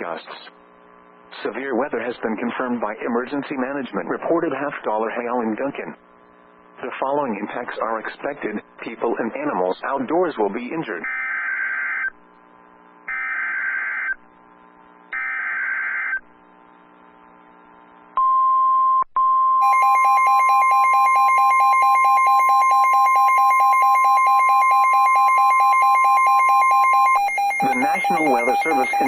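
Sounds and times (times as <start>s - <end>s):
steady single-pitch alert tone: 19.6s - 29.0s.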